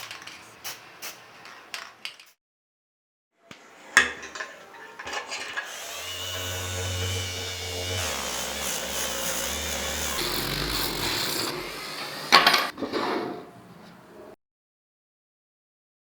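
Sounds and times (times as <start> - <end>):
power tool running: 5.6 - 12.7.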